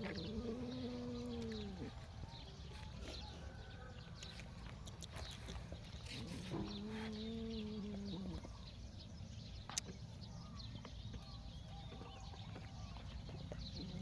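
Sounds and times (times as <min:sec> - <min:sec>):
long steady animal call: 0:00.0 - 0:02.3, 0:06.2 - 0:08.8.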